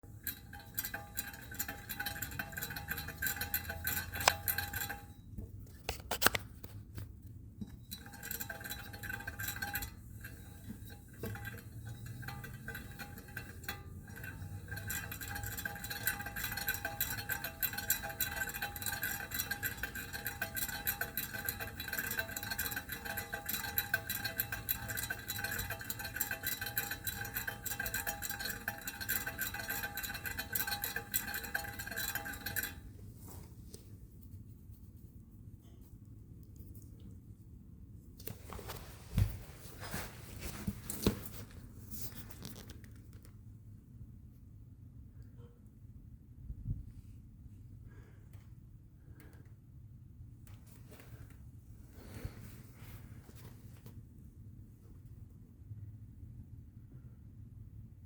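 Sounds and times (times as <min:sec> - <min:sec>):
wheel bearing whine: 0:00.0 - 0:05.2, 0:07.6 - 0:33.0.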